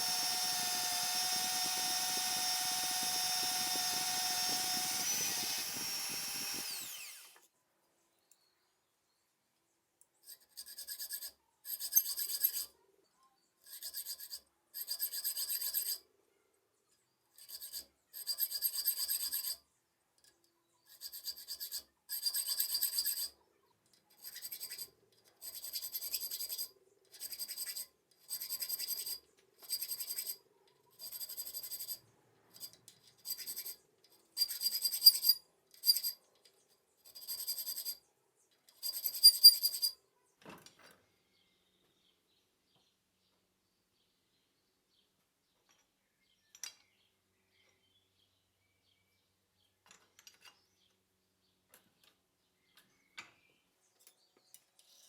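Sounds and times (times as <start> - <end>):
file scraping metal: 0.0 - 7.4, 10.2 - 12.8, 13.6 - 16.0, 17.3 - 19.6, 20.8 - 23.4, 24.1 - 36.2, 37.0 - 38.0, 38.7 - 40.0.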